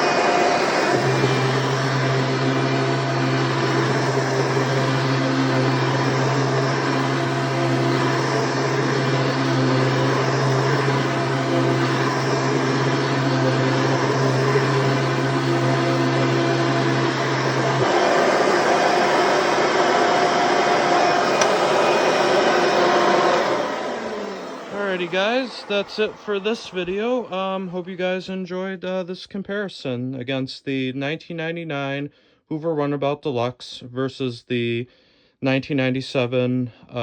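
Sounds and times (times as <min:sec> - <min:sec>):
vacuum cleaner running: 0:00.0 - 0:28.2.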